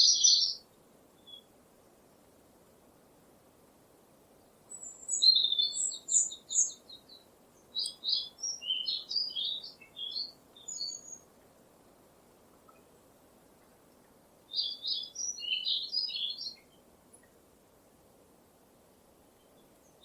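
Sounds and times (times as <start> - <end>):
bird singing: 0.0 - 1.5, 4.7 - 11.3, 14.5 - 17.4
faint background noise: 0.0 - 20.0.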